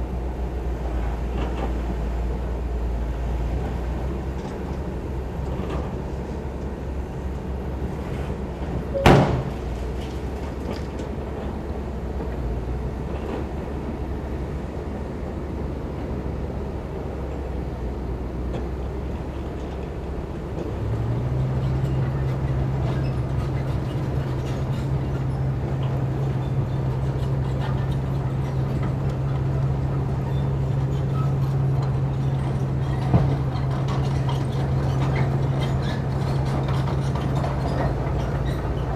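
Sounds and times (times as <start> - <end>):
small knock: 9.0 - 9.8
loud bang: 9.0 - 10.0.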